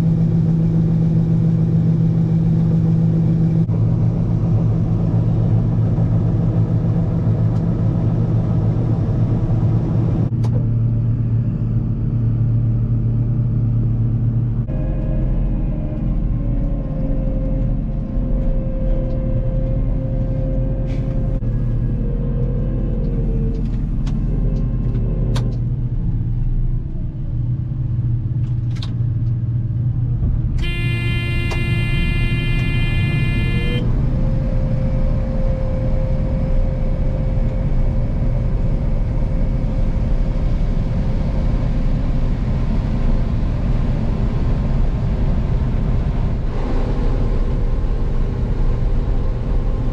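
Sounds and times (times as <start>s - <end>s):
vehicle engine running: 29.4s - 47.3s
vehicle horn: 30.6s - 33.9s.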